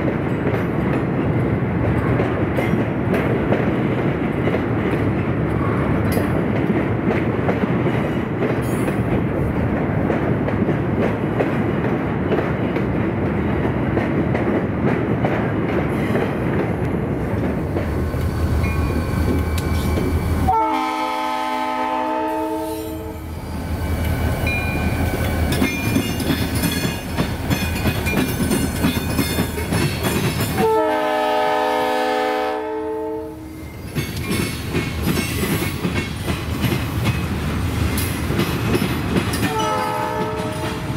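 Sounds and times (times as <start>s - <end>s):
freight train clattering on rails: 0.0s - 23.2s, 23.8s - 40.9s
locomotive horn blasts: 20.5s - 23.3s, 30.6s - 33.5s, 39.5s - 40.8s.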